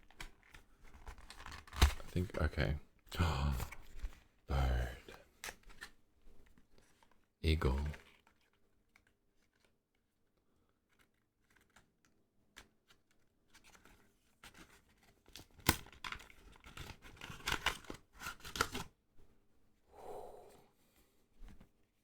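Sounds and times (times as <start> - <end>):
paper packaging tearing and crinkling: 1.0 - 2.4.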